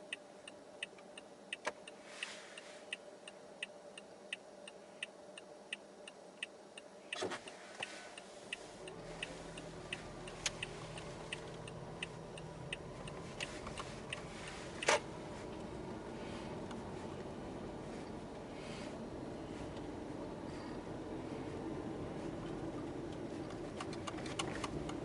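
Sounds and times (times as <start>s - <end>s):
low steady hum: 0.0s - 25.0s
turn signal ticking: 0.0s - 25.0s.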